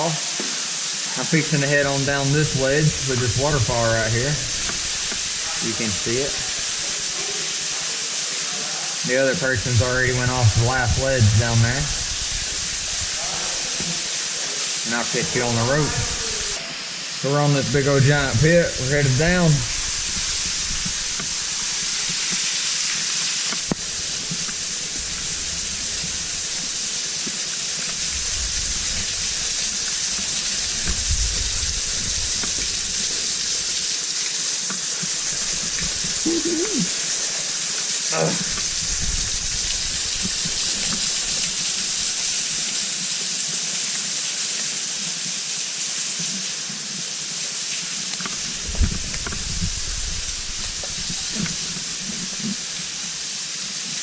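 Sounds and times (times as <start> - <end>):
waterfall splashing: 0.0 - 54.0.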